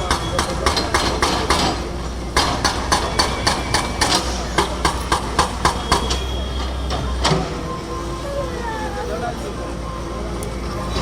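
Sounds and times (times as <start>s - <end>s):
concrete breaker hammering: 0.0s - 6.2s.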